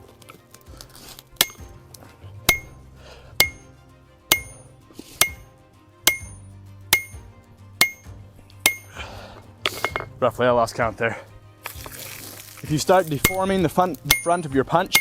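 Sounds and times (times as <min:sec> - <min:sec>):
background music: 0:00.0 - 0:15.0
hammer striking hot punch: 0:01.4 - 0:01.7, 0:02.5 - 0:02.8, 0:03.4 - 0:03.7, 0:04.3 - 0:05.5, 0:06.1 - 0:08.9.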